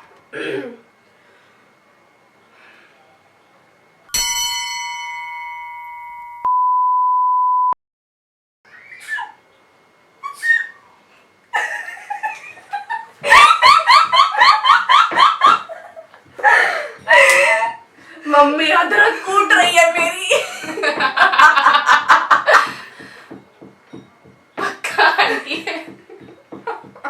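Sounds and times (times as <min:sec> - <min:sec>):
bell-like ding: 0:04.1 - 0:06.5
pestle pounding in mortar: 0:20.6 - 0:24.7, 0:25.5 - 0:27.0.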